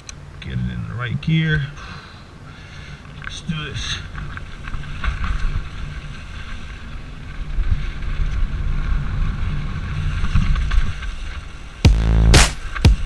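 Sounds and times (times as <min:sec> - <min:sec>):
tyres rumbling on trail: 0:00.0 - 0:13.0
loud music: 0:11.9 - 0:13.0.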